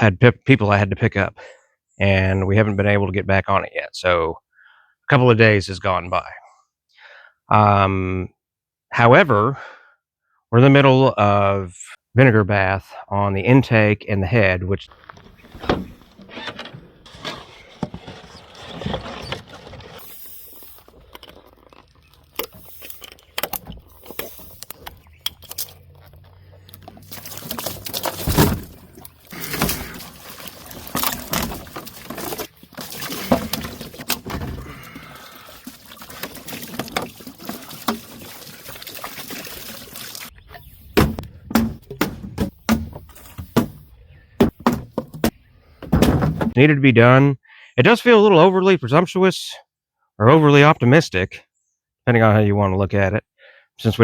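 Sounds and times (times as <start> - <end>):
knocks and clunks: 15.0 - 20.0, 22.3 - 35.2, 40.4 - 46.6
liquid pouring into a bath: 19.1 - 24.8, 26.7 - 40.3.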